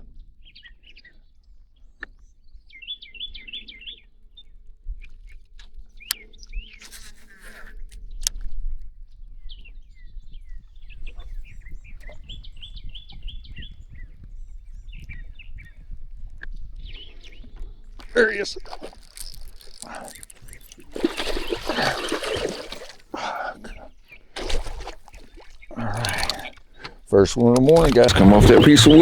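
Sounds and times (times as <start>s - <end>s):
birds chirping in trills: 19.1s - 29.0s
sharp clicks: 25.8s - 29.0s.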